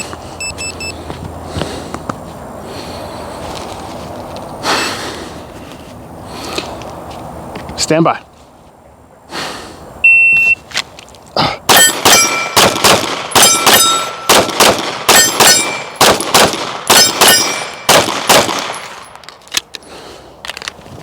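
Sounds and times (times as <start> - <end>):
shot timer beep: 10.1 - 10.6
steel target ringing: 11.7 - 16.2, 16.9 - 18.0
rapid pistol shots: 11.7 - 19.1.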